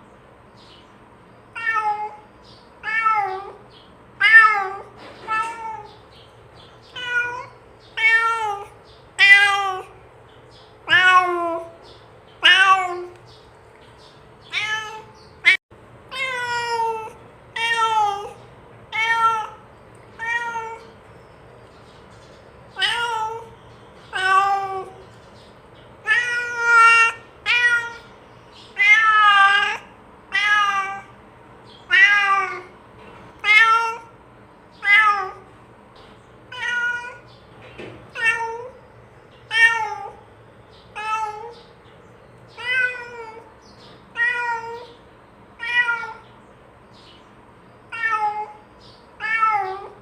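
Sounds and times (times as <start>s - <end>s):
cat meowing: 1.5s - 3.6s, 4.2s - 6.0s, 6.9s - 10.0s, 10.8s - 11.8s, 12.4s - 13.2s, 14.4s - 21.0s, 22.8s - 25.0s, 26.0s - 28.1s, 28.7s - 31.2s, 31.8s - 32.8s, 33.4s - 34.2s, 34.8s - 35.5s, 36.5s - 37.3s, 38.1s - 38.8s, 39.5s - 40.2s, 40.9s - 41.7s, 42.6s - 43.5s, 44.1s - 45.0s, 45.6s - 46.3s, 47.9s - 48.6s, 49.2s - 50.0s.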